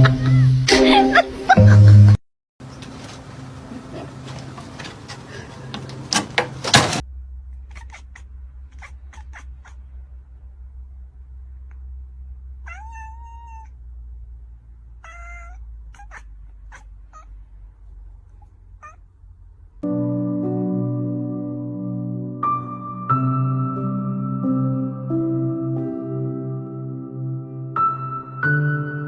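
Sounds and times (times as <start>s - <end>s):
low hum: 7.0s - 22.4s
cat meowing: 7.7s - 9.9s, 12.6s - 13.8s, 15.0s - 17.3s, 18.8s - 19.0s.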